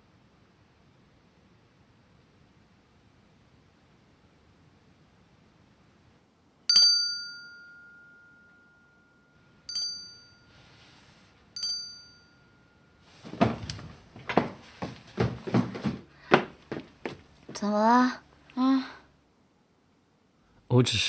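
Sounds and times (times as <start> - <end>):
call bell dinging: 6.7 - 10.7, 11.6 - 13.1
irregular noises: 8.2 - 19.0.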